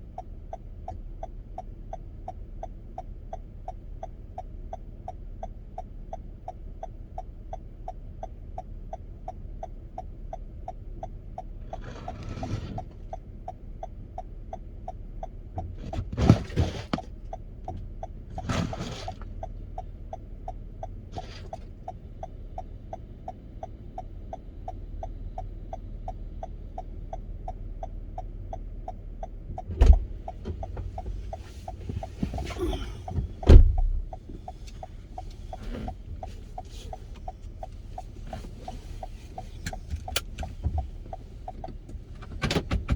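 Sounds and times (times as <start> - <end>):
fast regular ticking: 0.0 - 11.9, 19.3 - 33.2
low road rumble: 0.0 - 42.9
loud thumps and bumps: 33.2 - 34.1.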